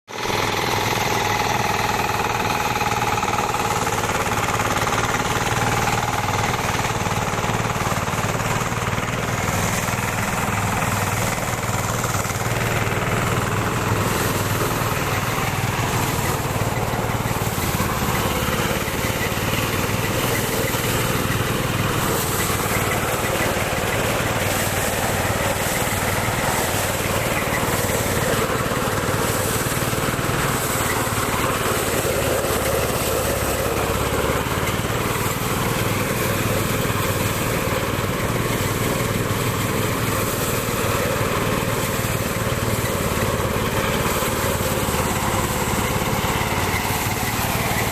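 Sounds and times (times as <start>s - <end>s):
fast dense rattle: 0.1s - 47.9s
harvesting machine engine running: 0.1s - 47.9s.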